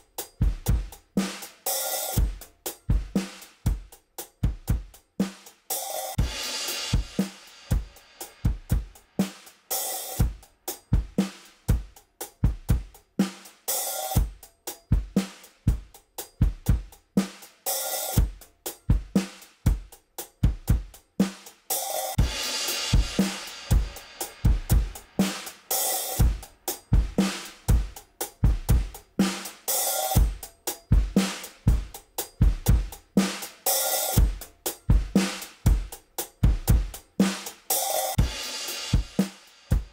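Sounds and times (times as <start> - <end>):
drum kit groove: 0.0 - 39.9
cymbal crash: 22.2 - 26.3.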